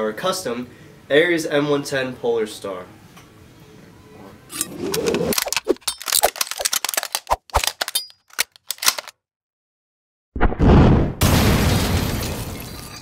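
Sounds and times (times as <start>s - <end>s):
loud boom: 10.4s - 12.5s.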